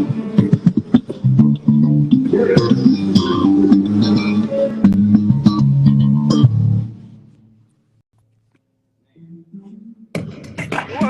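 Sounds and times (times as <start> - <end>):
bass guitar plucked notes: 0.0 - 7.3.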